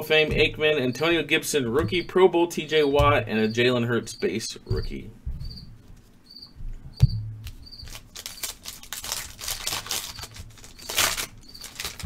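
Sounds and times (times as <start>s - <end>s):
foil pack crinkling: 7.5s - 12.0s.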